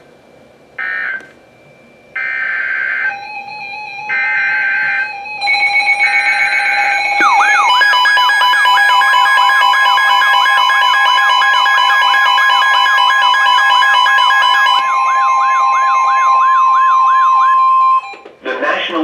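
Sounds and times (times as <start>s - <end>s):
steady warning alarm tone: 0.6s - 18.3s
warbling siren-like alert: 4.1s - 18.2s
fast beeping: 6.1s - 17.2s.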